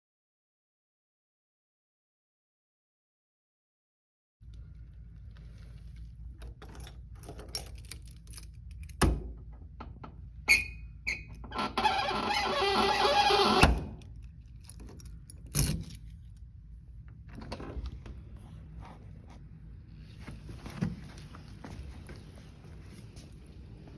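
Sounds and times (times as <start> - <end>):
keys and lock clicking: 6.5 - 9.2, 13.6 - 16.4
lock clunk: 13.5 - 16.0.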